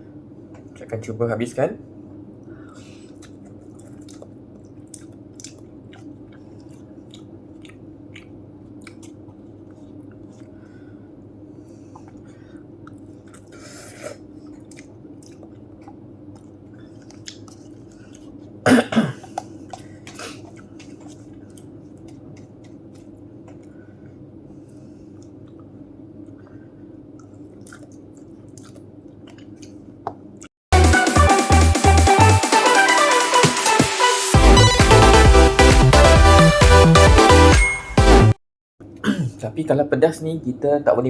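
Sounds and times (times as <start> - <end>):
person chewing noodles: 2.1 - 18.6, 19.2 - 30.5
person coughing: 18.6 - 19.5, 39.0 - 39.4.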